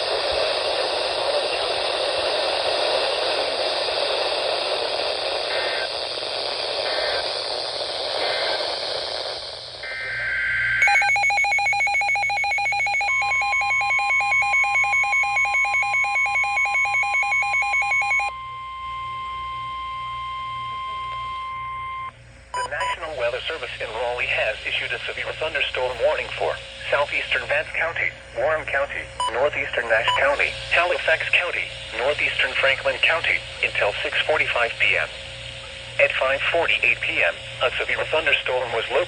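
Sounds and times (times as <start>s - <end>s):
radio static hiss: 0.0s - 18.3s, 22.5s - 39.0s
steady electronic tone: 9.7s - 22.9s
rapidly pulsing beep: 10.8s - 23.0s, 30.0s - 30.4s.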